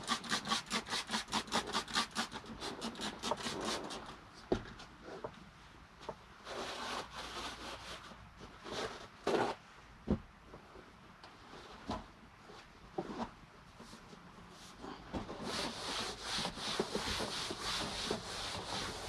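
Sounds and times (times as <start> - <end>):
towel rubbing floor: 15.4 - 19.0.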